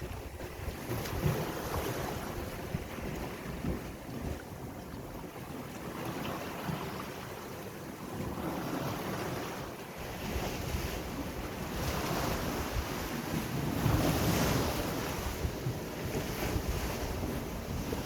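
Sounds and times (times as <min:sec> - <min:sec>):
wind buffeting microphone: 0:00.0 - 0:07.0, 0:08.0 - 0:18.0
sea waves breaking: 0:00.0 - 0:18.0.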